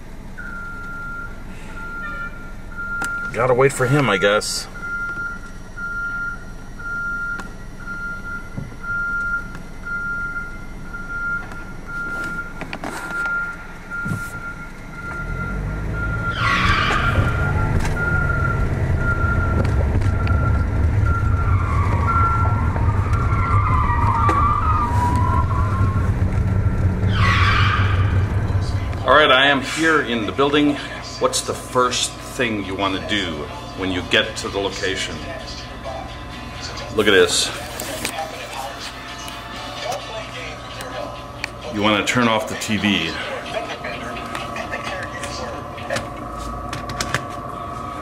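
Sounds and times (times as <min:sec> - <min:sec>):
car engine idling: 0:00.0 - 0:48.0
truck reversing alarm beeping: 0:00.0 - 0:48.0
short squeals: 0:15.2 - 0:18.6, 0:21.1 - 0:28.7.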